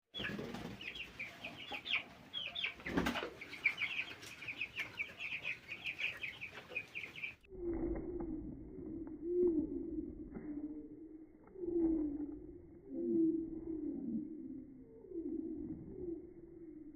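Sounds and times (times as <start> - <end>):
chicks peeping: 0.1 - 7.5.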